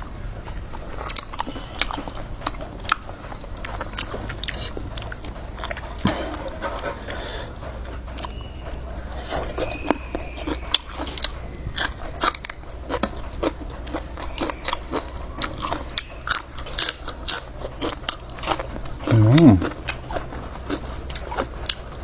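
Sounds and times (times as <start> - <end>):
crunching and chewing: 0.0 - 22.0
mouth clicks: 19.0 - 19.8.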